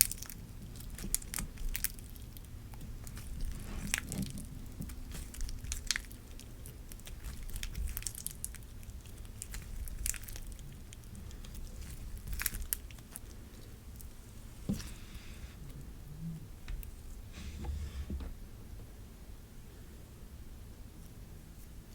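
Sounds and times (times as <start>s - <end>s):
slime squished by hands: 0.0s - 15.0s.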